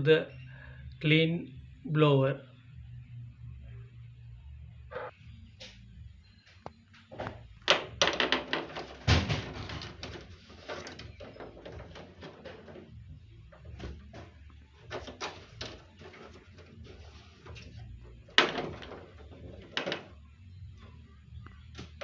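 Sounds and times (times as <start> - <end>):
hard objects clicking and knocking: 7.2 - 20.2.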